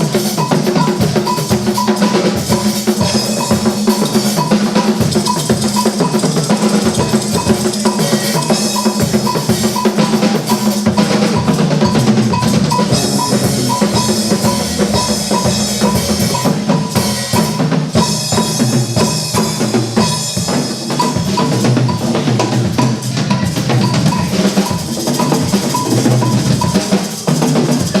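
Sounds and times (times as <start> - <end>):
drum kit beat: 0.0 - 28.0
repeating high note: 11.0 - 17.6.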